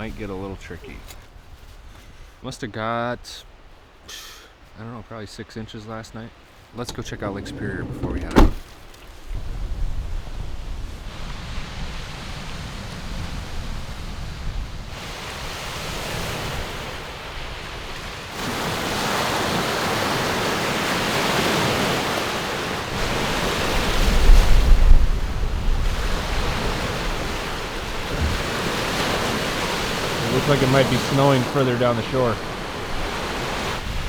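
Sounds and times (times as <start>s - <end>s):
wind: 0.0s - 34.0s
waves washing on shore: 15.0s - 34.0s.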